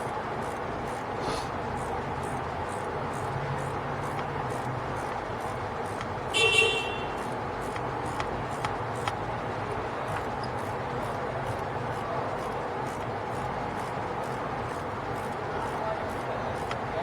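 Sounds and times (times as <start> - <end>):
wrench clicking on bolt: 7.2 - 9.2.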